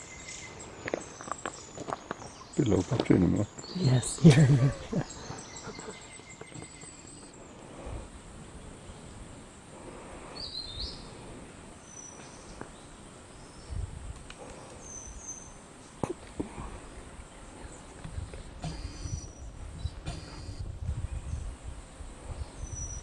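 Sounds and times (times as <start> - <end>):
birds calling: 0.0 - 9.2, 14.4 - 20.7.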